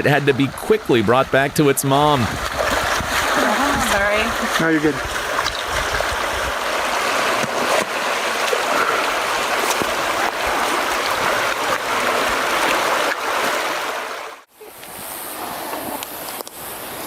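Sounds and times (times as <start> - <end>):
stream water flowing: 0.0 - 17.0
small splashes: 2.2 - 14.5.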